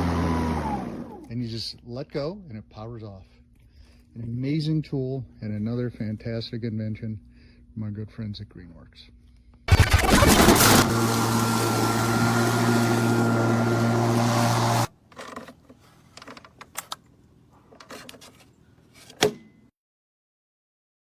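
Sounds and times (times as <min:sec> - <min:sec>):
lawn mower running: 0:00.0 - 0:01.3, 0:09.7 - 0:15.4.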